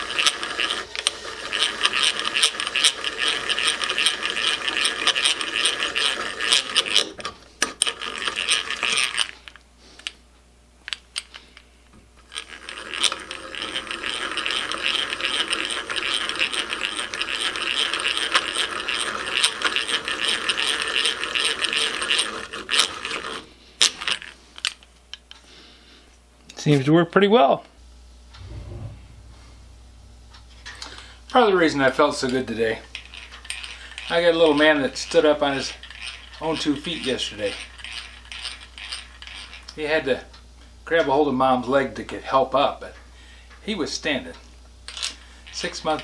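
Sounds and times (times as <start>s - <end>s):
hand drill cranking: 0.0s - 9.4s, 12.3s - 24.3s, 33.0s - 39.7s.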